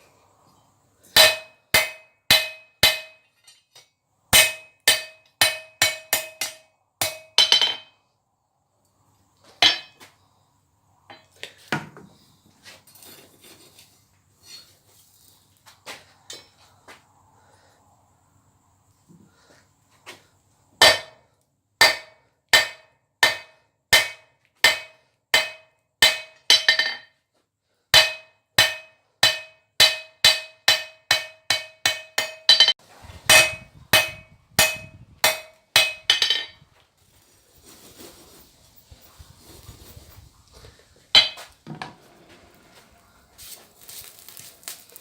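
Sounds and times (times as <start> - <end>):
hammer ringing on anvil: 28.0 - 36.5.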